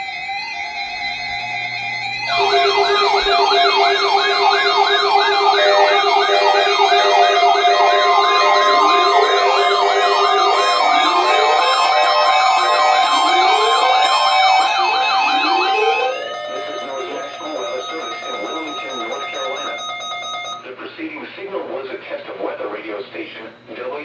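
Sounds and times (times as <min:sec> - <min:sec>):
electronic siren yelp: 0:00.0 - 0:20.6
rising siren wails: 0:00.0 - 0:20.6
warbling siren tone: 0:00.0 - 0:20.6
pulsing low tone: 0:02.3 - 0:19.9.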